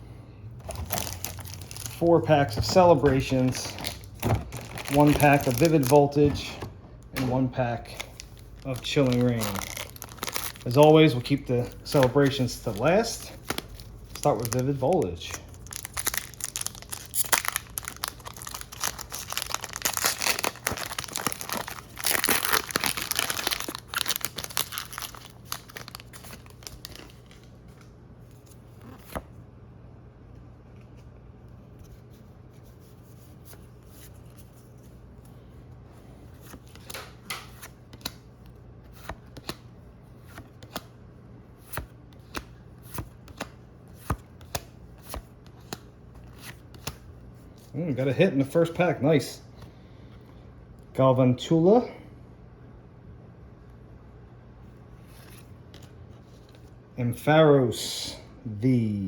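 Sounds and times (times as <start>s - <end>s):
foil wrapper crinkling and tearing: 0.6s - 6.2s, 7.9s - 27.5s.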